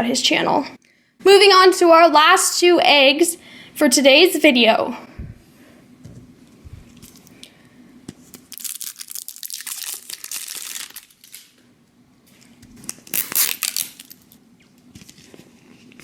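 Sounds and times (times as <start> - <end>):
plastic wrapper crinkling and tearing: 6.8 - 7.5, 8.1 - 11.6, 12.3 - 16.0.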